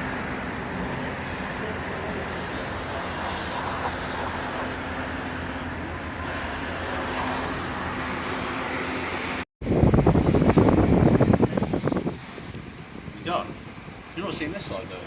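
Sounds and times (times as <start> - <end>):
distant city traffic: 0.0 - 15.0
wind buffeting microphone: 9.2 - 15.0.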